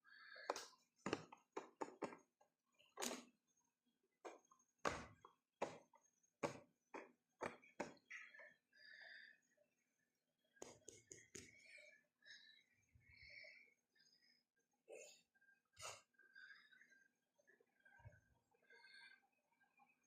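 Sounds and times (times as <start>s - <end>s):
sharp taps and knocks: 0.5s - 2.3s, 4.2s - 8.1s.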